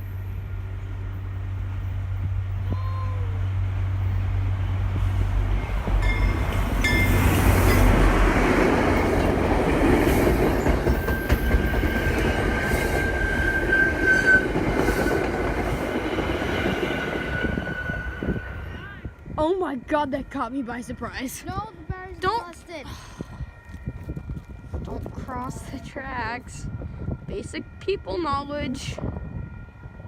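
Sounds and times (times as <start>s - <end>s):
train wheels rushing over rail joints: 0.0s - 18.8s
high wheel squeal: 11.2s - 15.3s, 16.9s - 18.8s.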